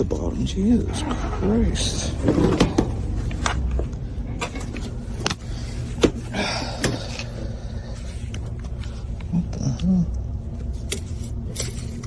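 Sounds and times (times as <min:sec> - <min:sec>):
low steady rumble: 0:00.0 - 0:12.0.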